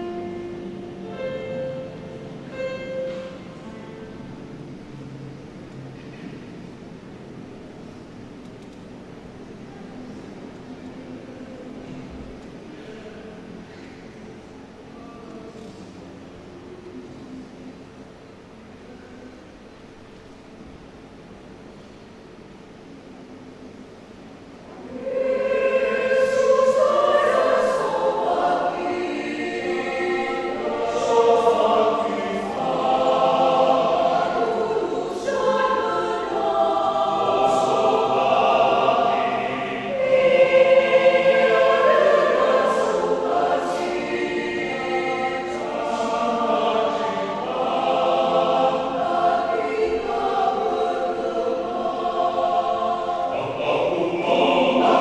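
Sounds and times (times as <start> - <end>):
choir singing a hymn: 0.0 - 5.7, 24.7 - 55.0.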